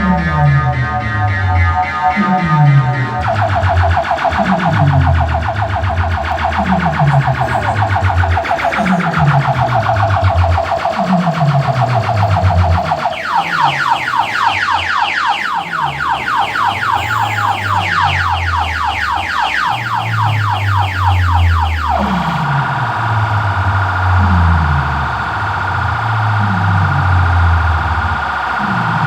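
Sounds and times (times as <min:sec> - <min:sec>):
deep falling bass note: 0:00.0 - 0:13.1, 0:19.9 - 0:28.8
high siren-like warble: 0:00.0 - 0:29.0
loud electronic music: 0:00.0 - 0:29.0.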